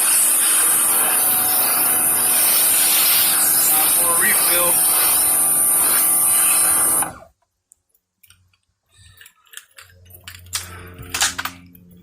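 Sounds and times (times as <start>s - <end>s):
pressure washer spraying: 0.0s - 7.3s.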